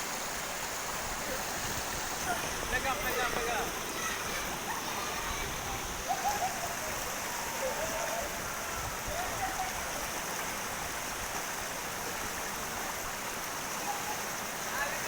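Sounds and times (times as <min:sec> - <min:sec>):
waterfall rushing: 0:00.0 - 0:15.0
faint voices: 0:01.2 - 0:10.4.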